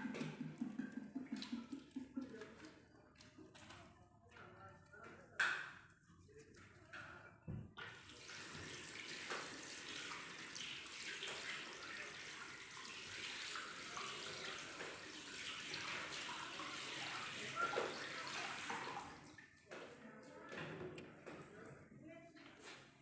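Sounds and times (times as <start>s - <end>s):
tap water running into sink: 0.0s - 2.8s, 7.8s - 19.7s.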